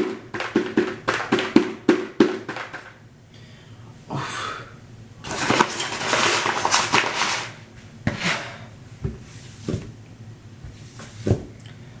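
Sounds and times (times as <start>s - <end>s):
rustling noise: 5.2s - 8.5s.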